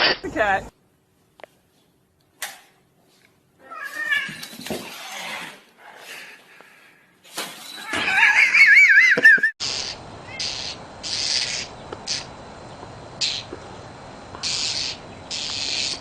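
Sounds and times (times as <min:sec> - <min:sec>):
cat meowing and yowling: 0:03.6 - 0:04.4.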